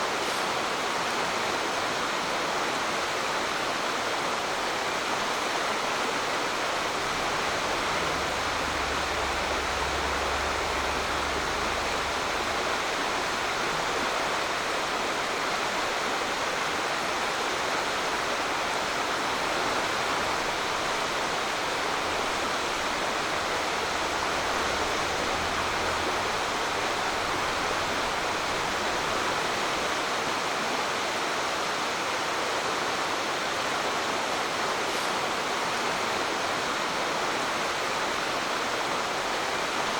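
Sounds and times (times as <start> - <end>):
waterfall rushing: 0.0 - 39.9
faint low rumble: 6.2 - 15.3, 19.4 - 29.6.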